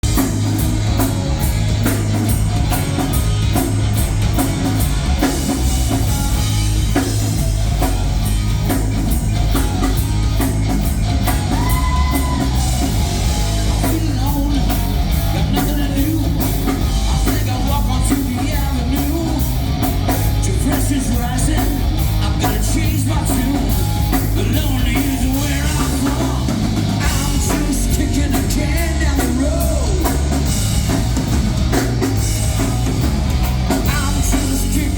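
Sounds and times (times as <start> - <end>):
drum kit: 0.0 - 34.9
rock band playing loudly: 0.0 - 34.9
person singing: 11.2 - 19.5, 20.4 - 30.5, 33.7 - 34.9.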